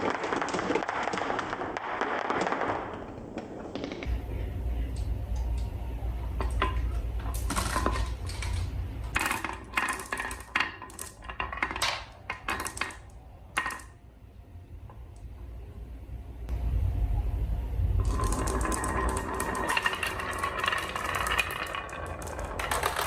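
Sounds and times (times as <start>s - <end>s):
marbles clattering on wooden track: 0.0s - 4.1s, 6.4s - 14.0s, 18.0s - 23.0s
low rolling rumble: 14.5s - 23.0s.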